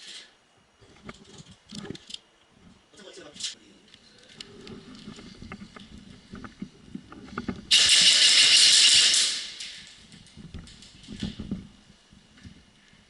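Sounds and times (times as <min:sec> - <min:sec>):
loud hiss: 0:07.7 - 0:10.0.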